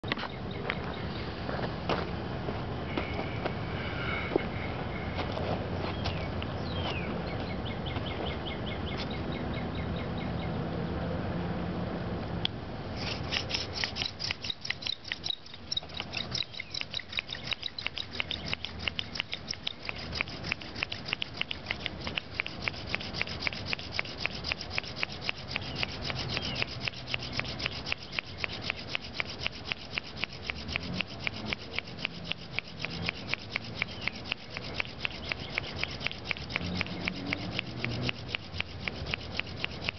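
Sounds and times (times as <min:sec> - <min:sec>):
wood rubbing on wood: 0:13.0 - 0:39.9.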